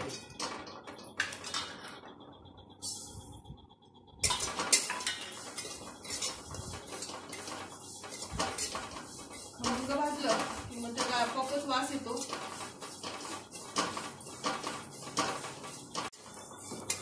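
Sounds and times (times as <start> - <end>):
metal spatula scraping a pan: 4.2 - 17.0.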